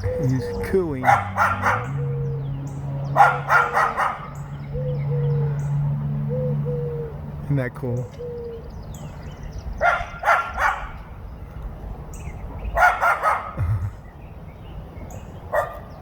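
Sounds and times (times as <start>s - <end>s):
dog barking: 1.0s - 2.0s, 3.2s - 4.4s, 9.8s - 11.0s, 12.8s - 13.6s, 15.5s - 16.0s.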